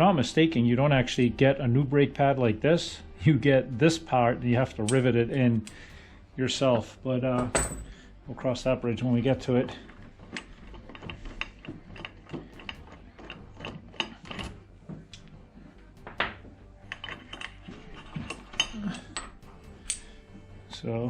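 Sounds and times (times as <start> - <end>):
small metal parts clinking: 10.3 - 14.6, 16.0 - 20.2.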